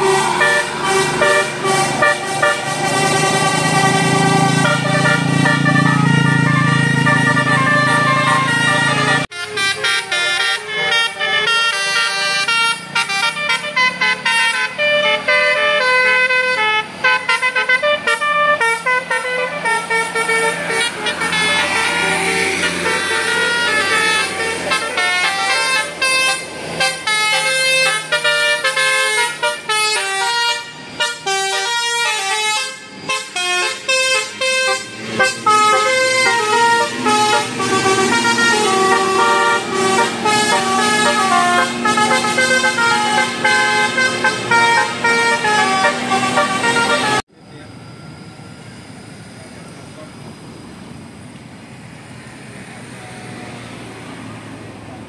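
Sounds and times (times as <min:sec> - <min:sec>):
bus horn playing a fast tune: 0:00.0 - 0:47.3
bus engine running: 0:00.0 - 0:55.0.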